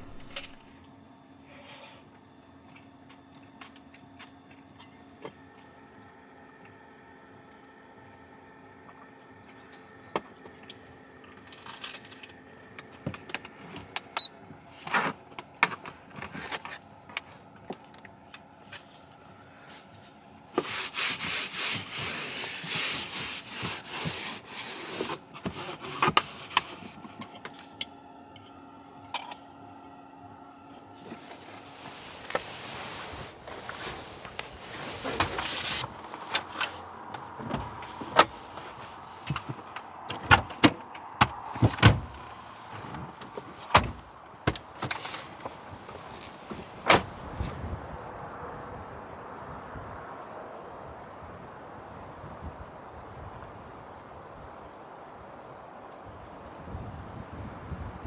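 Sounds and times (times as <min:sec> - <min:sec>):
rustling: 0:00.0 - 0:00.6, 0:31.0 - 0:36.9.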